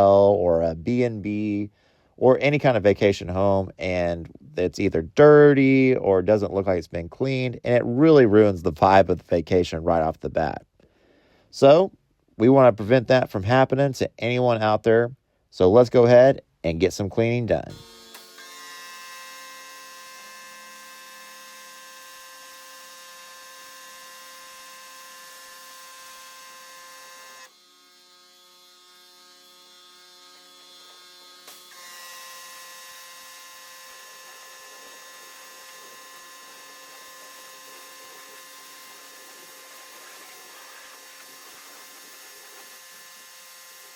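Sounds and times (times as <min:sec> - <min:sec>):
pressure washer running: 0:33.1 - 0:43.9.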